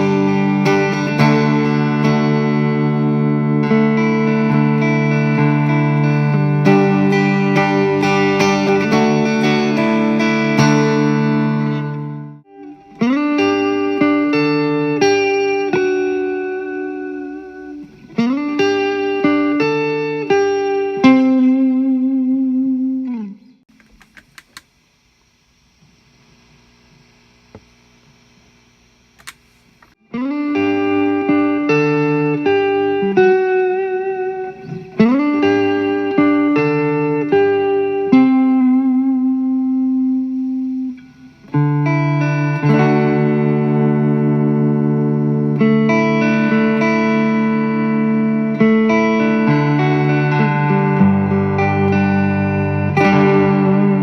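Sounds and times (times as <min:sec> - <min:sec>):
distorted electric guitar notes: 0:00.0 - 0:23.6, 0:30.0 - 0:54.0
faint amp hum: 0:00.0 - 0:54.0
clicks: 0:23.7 - 0:28.2, 0:29.1 - 0:30.0.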